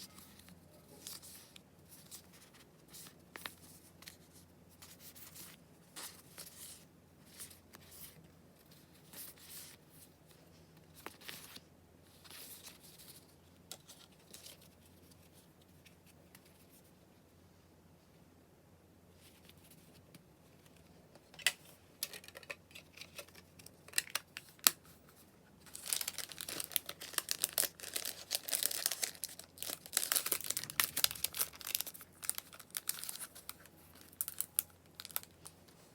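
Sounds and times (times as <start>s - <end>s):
packaging rustling and crinkling: 25.6s - 35.9s.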